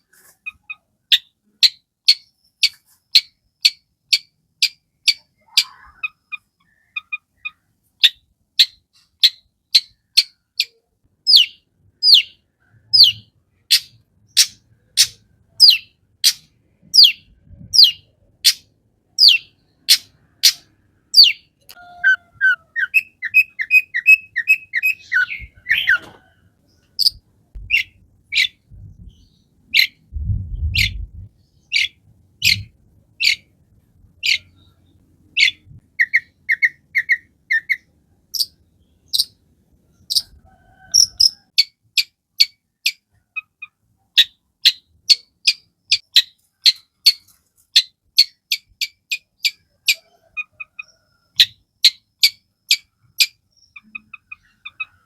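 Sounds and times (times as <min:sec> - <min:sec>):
bird singing harsh notes: 0:19.2 - 0:26.0
low rumble: 0:27.6 - 0:29.3, 0:30.0 - 0:31.4.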